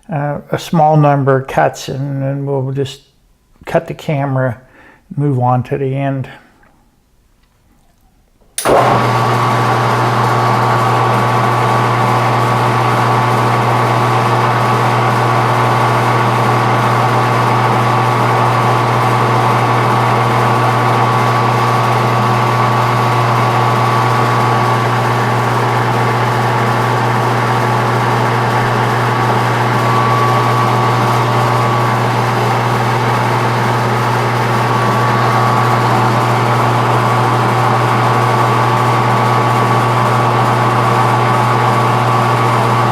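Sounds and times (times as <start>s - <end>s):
metal lathe humming and whining: 8.6s - 42.9s.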